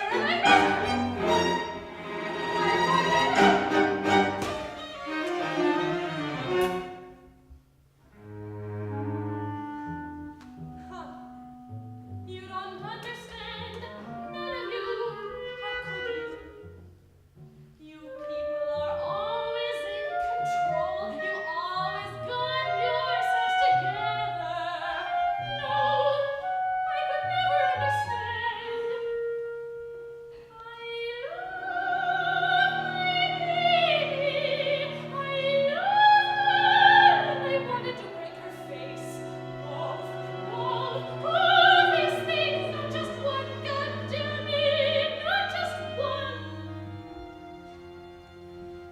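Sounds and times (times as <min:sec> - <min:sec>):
instrumental accompaniment: 0:00.0 - 0:19.1
soprano singing opera: 0:12.3 - 0:16.6, 0:17.8 - 0:29.7, 0:30.4 - 0:47.3.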